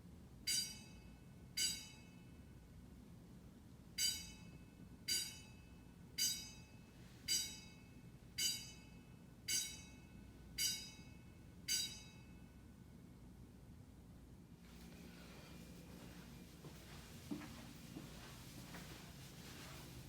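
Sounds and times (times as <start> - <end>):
fire alarm bell ringing: 0.4 - 2.7, 3.9 - 13.1.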